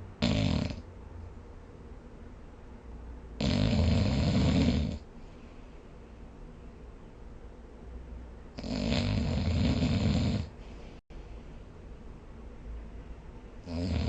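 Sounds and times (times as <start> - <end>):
person snoring: 0.2 - 0.8, 3.4 - 5.0, 8.6 - 10.6, 13.6 - 14.0.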